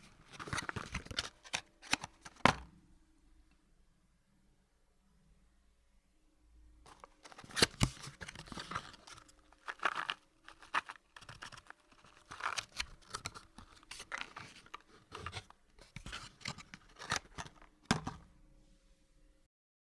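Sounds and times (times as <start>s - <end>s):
cardboard rustling and scraping: 0.0s - 2.6s, 6.9s - 18.3s.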